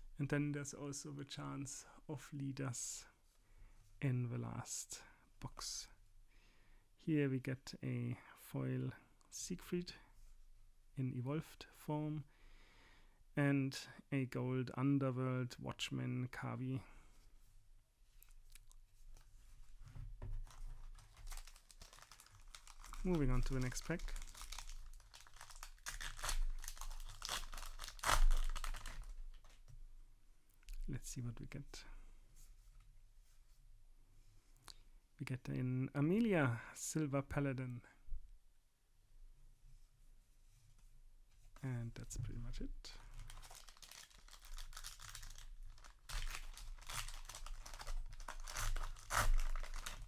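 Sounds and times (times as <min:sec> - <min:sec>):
foil wrapper crinkling and tearing: 0:20.4 - 0:29.6, 0:43.1 - 0:50.0.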